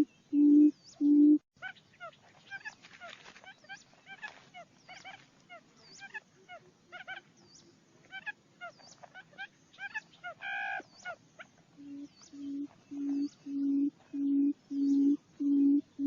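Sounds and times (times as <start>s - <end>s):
low hooting bird notes: 0.0s - 1.4s, 11.8s - 16.0s
short chirping calls: 7.0s - 16.0s.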